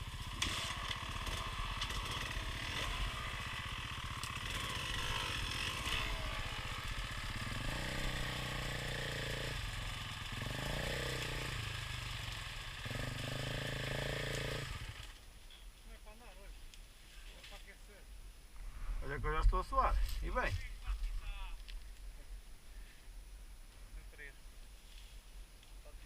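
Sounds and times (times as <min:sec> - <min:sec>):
motorcycle engine revving: 0:00.0 - 0:15.2.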